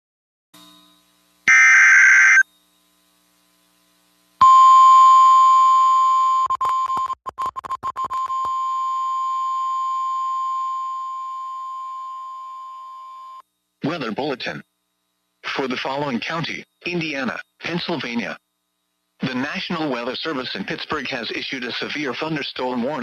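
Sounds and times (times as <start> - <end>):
digital data burst: 1.5 - 2.4
steady warning alarm tone: 1.5 - 2.4.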